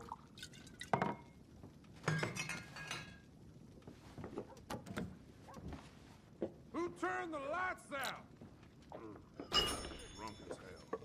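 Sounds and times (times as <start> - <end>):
glassware clinking and knocking: 0.8 - 1.3, 2.0 - 3.2, 9.4 - 11.0.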